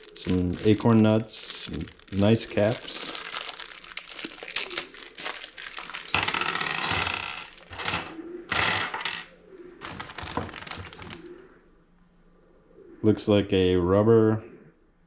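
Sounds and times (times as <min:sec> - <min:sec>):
plastic packaging rustling: 0:00.0 - 0:09.2, 0:09.8 - 0:11.4.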